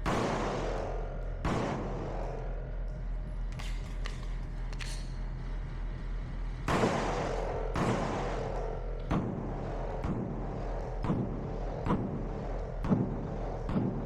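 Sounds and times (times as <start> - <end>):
pistol shots: 0.0 - 2.7, 6.7 - 14.0.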